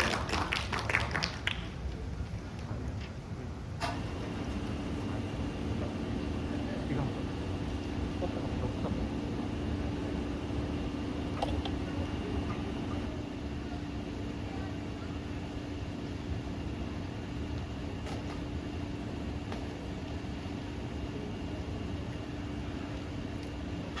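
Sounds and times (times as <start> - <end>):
constant low hum: 0.0 - 24.0.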